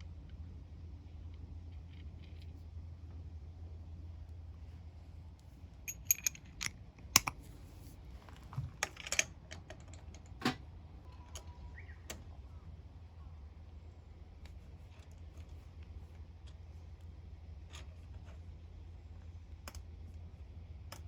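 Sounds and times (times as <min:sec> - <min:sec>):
hand tools clinking: 0:05.9 - 0:07.3
steady low hum: 0:09.8 - 0:21.0.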